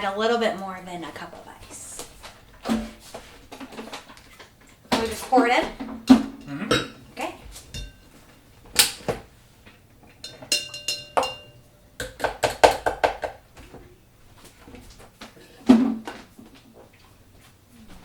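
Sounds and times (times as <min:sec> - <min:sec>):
kitchenware clinking: 0:02.7 - 0:08.2, 0:10.1 - 0:13.4.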